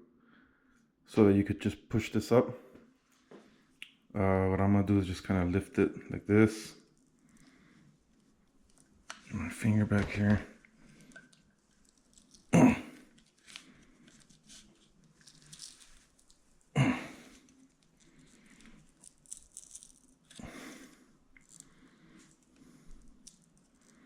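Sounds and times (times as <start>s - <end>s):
faint plastic scrapes and clicks: 6.8s - 16.7s, 17.3s - 24.0s.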